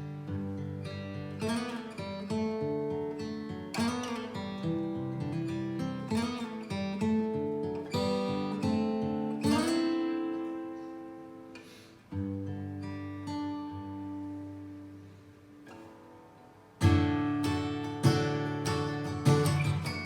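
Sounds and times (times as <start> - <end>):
acoustic guitar playing: 0.0 - 20.0.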